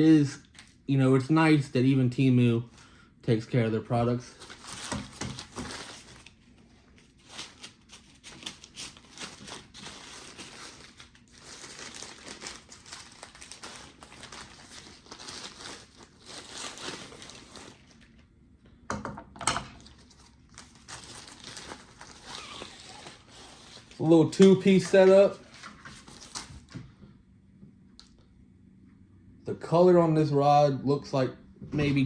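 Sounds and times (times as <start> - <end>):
packaging crinkling: 4.3 - 18.2, 19.8 - 26.8.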